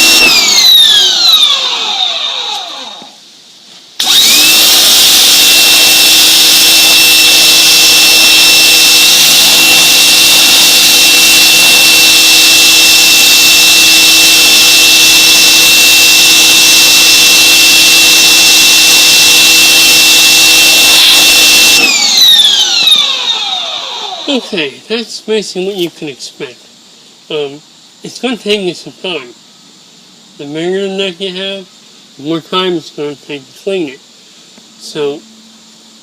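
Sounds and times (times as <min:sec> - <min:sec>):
pressure washer motor whining: 0:00.0 - 0:03.2, 0:04.0 - 0:24.5.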